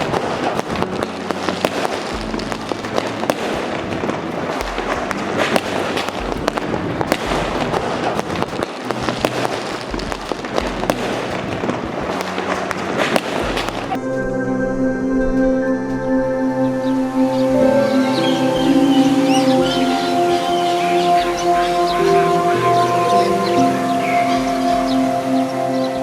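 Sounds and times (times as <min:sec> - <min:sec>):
firecrackers cracking: 0:00.0 - 0:14.0.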